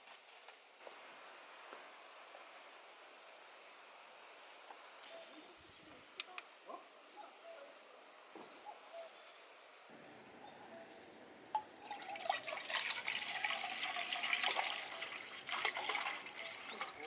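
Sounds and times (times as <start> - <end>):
tap water running and splashing: 11.6 - 17.0.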